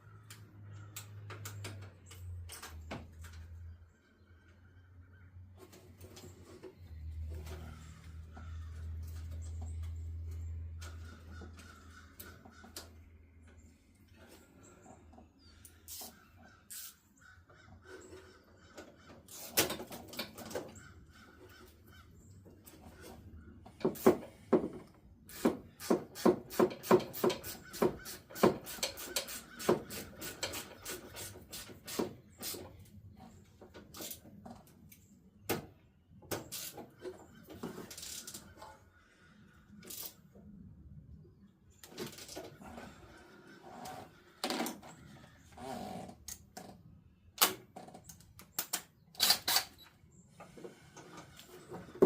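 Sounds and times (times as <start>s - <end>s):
hand tool rasping strokes: 25.3s - 32.6s.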